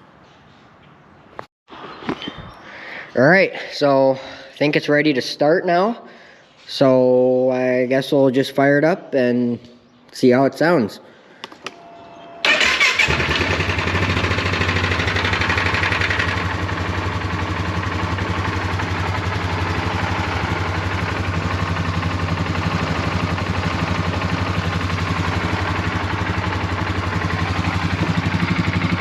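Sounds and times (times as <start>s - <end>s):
engine starting and idling: 12.4s - 29.0s.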